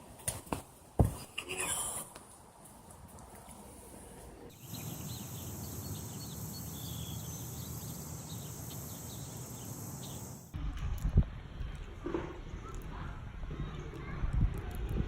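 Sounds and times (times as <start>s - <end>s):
bird chirps: 4.5s - 10.5s
high insect drone: 4.6s - 10.5s.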